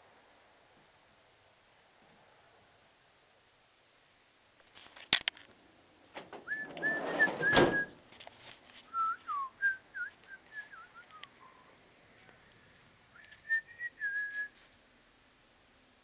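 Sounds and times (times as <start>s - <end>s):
person whistling: 6.4s - 8.0s, 8.9s - 11.2s, 13.2s - 14.6s.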